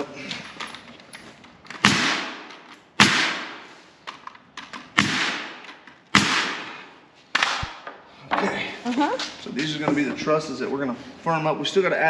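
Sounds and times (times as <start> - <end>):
nail gun firing: 1.7 - 3.6, 4.7 - 6.8, 7.4 - 7.8.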